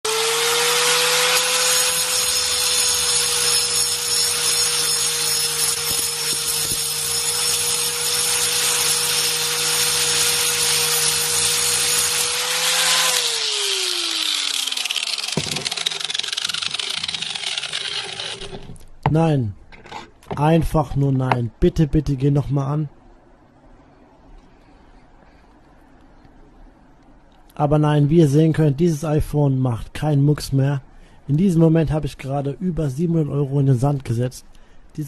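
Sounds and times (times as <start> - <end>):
grinder winding down: 0.0 - 18.7
angle grinder grinding: 0.0 - 18.8.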